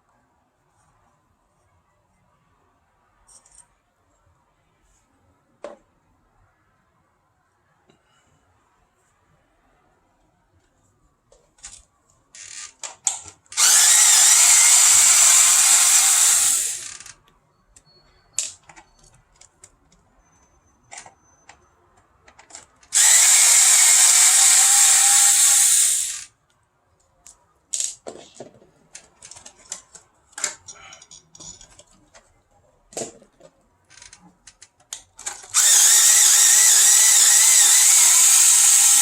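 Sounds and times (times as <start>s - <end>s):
handheld power tool running: 13.6s - 17.1s, 22.9s - 26.3s, 35.5s - 39.0s
handling clicks and knocks: 27.2s - 32.3s.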